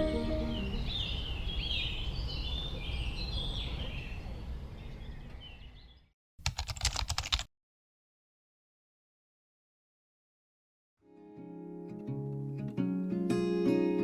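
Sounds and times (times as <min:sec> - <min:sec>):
birds chirping: 0:00.0 - 0:06.1
outdoor background noise: 0:00.0 - 0:06.6
rapid clicking: 0:06.4 - 0:07.5.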